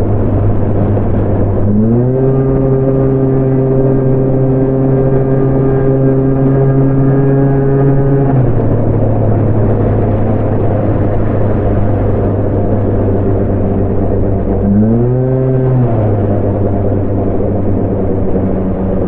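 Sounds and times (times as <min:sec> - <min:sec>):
vehicle engine idling: 0:00.0 - 0:19.0.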